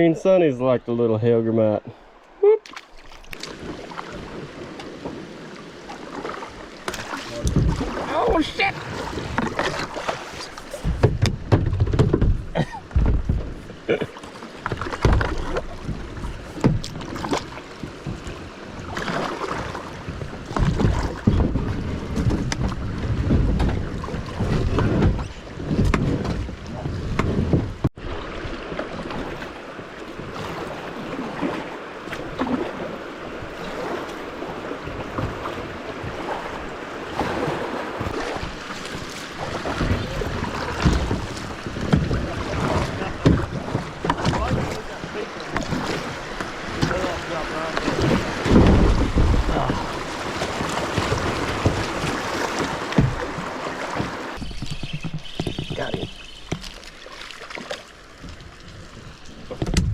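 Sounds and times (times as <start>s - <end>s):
paddle splashes: 1.9s - 59.9s
knocks against plastic hull: 10.7s - 13.6s, 39.7s - 44.8s, 59.5s - 59.9s
wind buffeting microphone: 15.1s - 27.8s, 39.5s - 56.3s.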